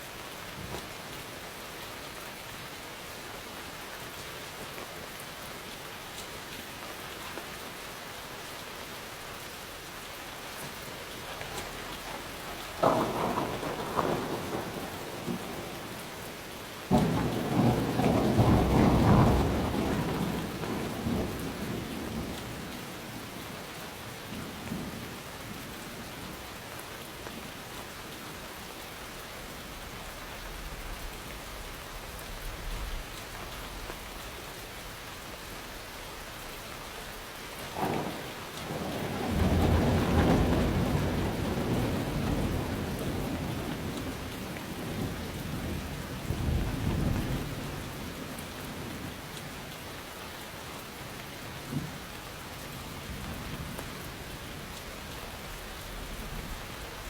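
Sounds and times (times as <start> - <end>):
steady rain falling: 0.0 - 57.0
thunderclap with rolling rumble: 10.6 - 22.8, 37.5 - 49.3.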